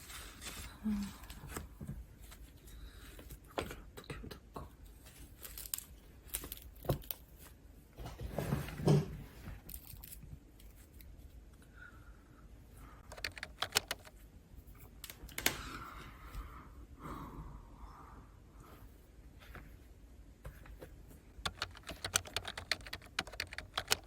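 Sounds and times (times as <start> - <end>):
small objects clicking on desk: 13.1 - 14.1, 21.4 - 24.0.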